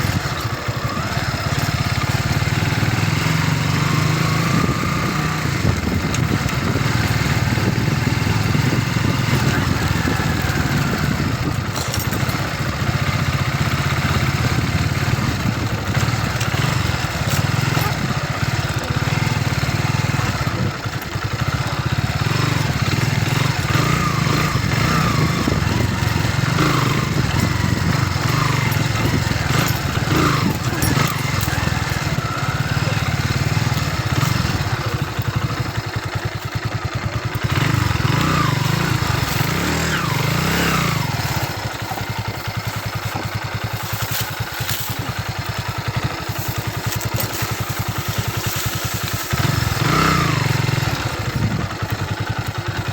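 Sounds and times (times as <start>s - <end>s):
motorcycle engine running: 0.0s - 52.9s.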